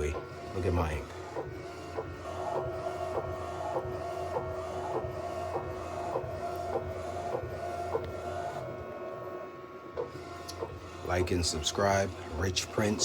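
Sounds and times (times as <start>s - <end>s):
printer motor whine and hum: 0.0s - 13.0s
print head carriage clicking: 10.0s - 13.0s.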